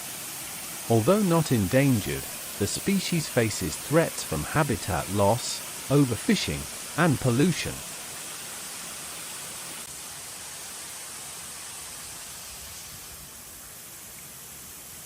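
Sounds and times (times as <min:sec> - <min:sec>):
waterfall rushing: 0:00.0 - 0:13.9.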